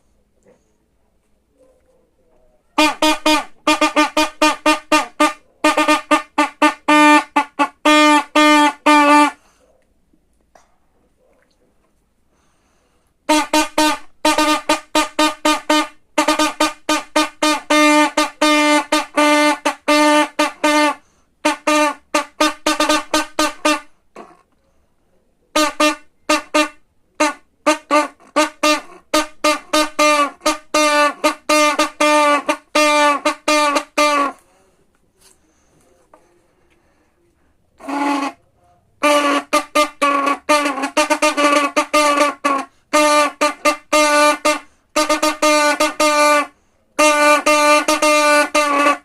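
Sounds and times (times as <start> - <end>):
horn playing quick short notes: 13.3 - 24.3, 25.5 - 34.5, 37.8 - 38.4, 39.0 - 49.0.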